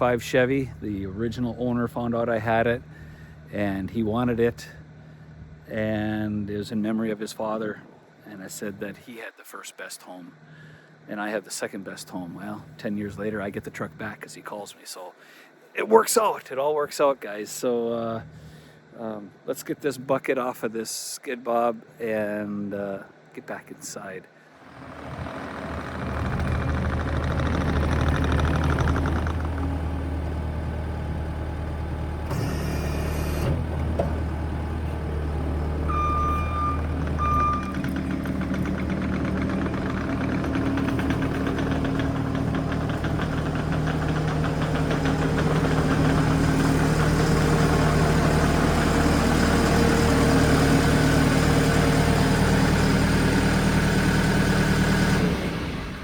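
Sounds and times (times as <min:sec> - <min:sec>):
diesel engine running: 0:00.0 - 0:06.7, 0:24.6 - 0:56.0
short electronic beeps: 0:35.9 - 0:37.8.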